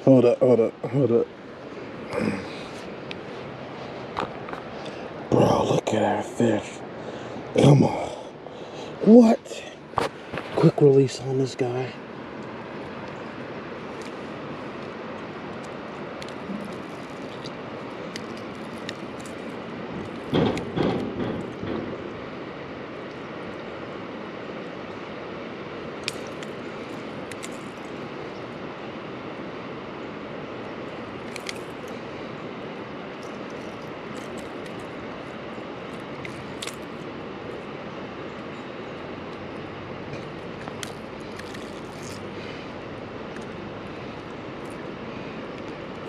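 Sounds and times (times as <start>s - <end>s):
creek water rushing: 0.0s - 46.0s.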